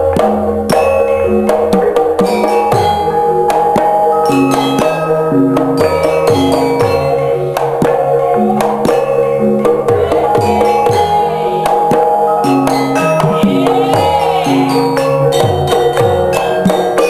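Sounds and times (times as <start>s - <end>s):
hand drum strokes falling in pitch: 0.0s - 17.0s
metallophones ringing a melody: 0.0s - 17.0s.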